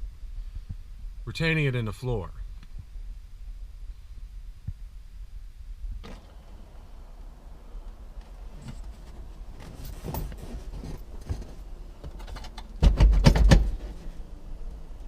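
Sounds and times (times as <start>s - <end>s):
hand tools clicking and knocking: 8.6s - 13.8s.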